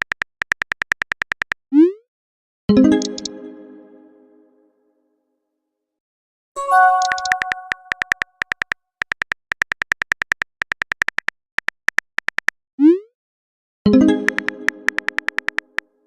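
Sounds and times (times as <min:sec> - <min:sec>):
rapid keyboard tap clicks: 0:00.0 - 0:01.6, 0:07.0 - 0:12.6, 0:14.3 - 0:15.8
message chime: 0:06.6 - 0:08.2.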